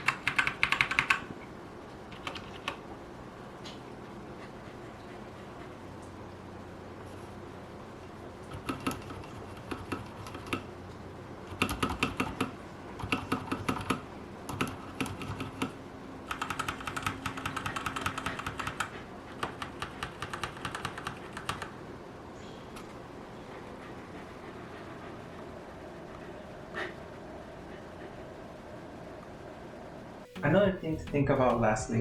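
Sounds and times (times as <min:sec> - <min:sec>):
mechanical keyboard typing: 0:00.0 - 0:01.3, 0:02.1 - 0:02.8, 0:11.5 - 0:21.7.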